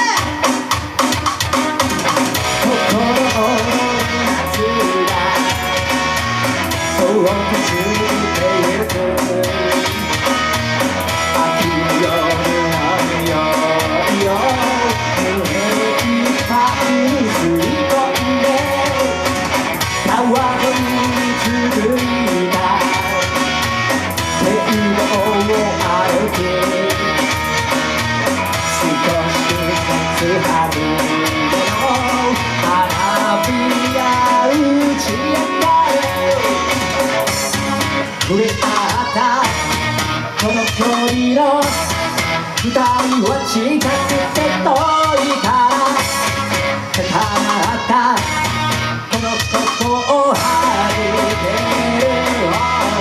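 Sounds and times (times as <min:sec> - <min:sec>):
bass guitar: 0:00.0 - 0:53.0
drum kit: 0:00.0 - 0:53.0
electric guitar lead: 0:00.0 - 0:53.0.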